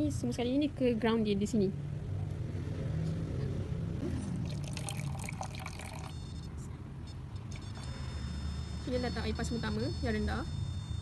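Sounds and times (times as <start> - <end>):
water pouring into container: 4.4 - 6.2.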